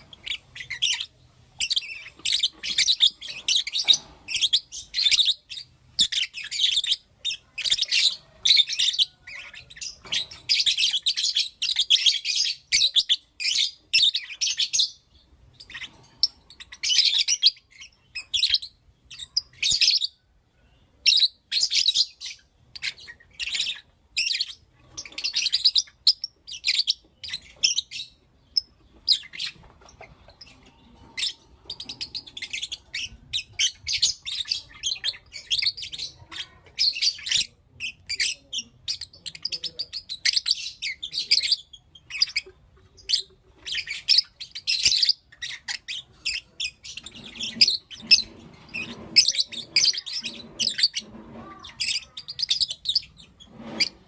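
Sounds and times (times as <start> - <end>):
lovebirds chirping: 0.0 - 54.0.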